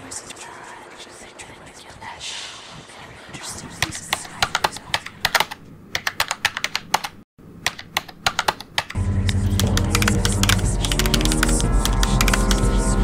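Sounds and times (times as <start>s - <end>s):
typing on a keyboard: 3.8s - 12.6s.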